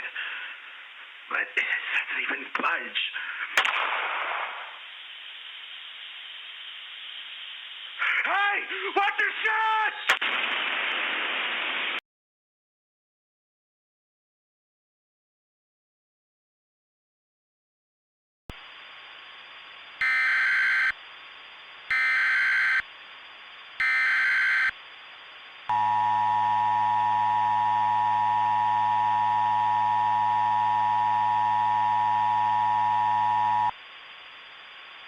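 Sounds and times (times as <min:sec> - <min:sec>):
static hiss: 0:00.0 - 0:12.0, 0:18.5 - 0:35.0
data bursts: 0:25.7 - 0:33.7
two-tone attention signal: 0:25.7 - 0:33.7.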